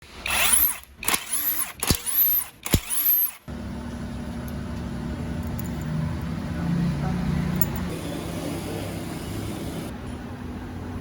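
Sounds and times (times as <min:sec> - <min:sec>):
steady mechanical hum: 0:02.5 - 0:11.0.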